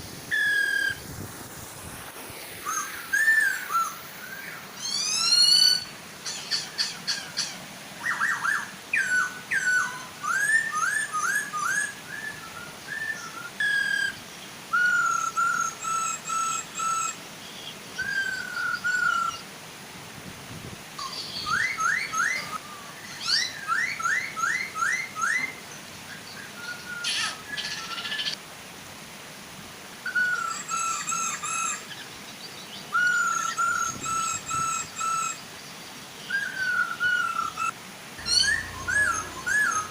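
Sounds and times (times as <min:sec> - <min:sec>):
waterfall rushing: 0:00.0 - 0:13.5, 0:37.6 - 0:39.9
birds singing whistled phrases: 0:00.3 - 0:01.0, 0:02.6 - 0:19.4, 0:21.0 - 0:28.4, 0:30.1 - 0:32.1, 0:32.7 - 0:35.4, 0:36.2 - 0:39.9.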